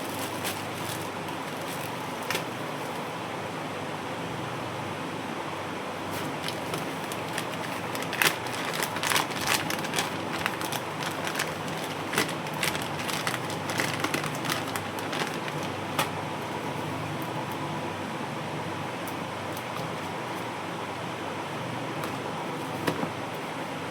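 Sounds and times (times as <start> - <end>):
packaging crinkling: 0.0 - 3.0, 6.1 - 16.1.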